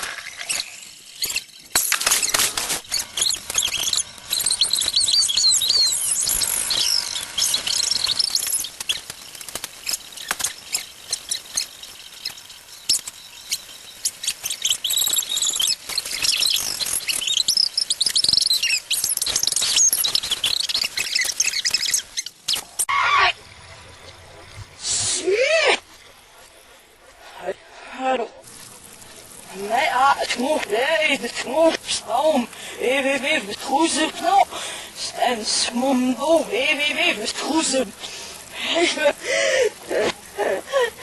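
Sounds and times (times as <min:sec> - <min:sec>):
rapid clicks: 0:00.0 - 0:22.8
high squeaky chirps: 0:00.2 - 0:23.3.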